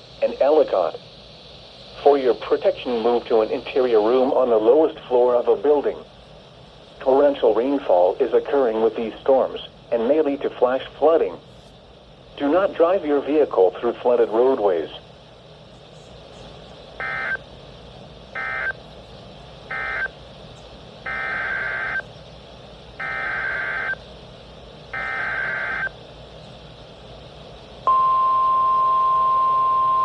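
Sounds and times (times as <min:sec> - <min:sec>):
data bursts: 0:16.9 - 0:17.5, 0:18.3 - 0:18.8, 0:19.7 - 0:20.2, 0:21.0 - 0:22.1, 0:23.0 - 0:24.1, 0:24.9 - 0:26.0
single-pitch alarm tone: 0:17.0 - 0:17.4, 0:18.4 - 0:18.8, 0:19.7 - 0:20.1, 0:21.0 - 0:22.1, 0:23.0 - 0:24.0, 0:24.9 - 0:26.0, 0:27.9 - 0:30.0.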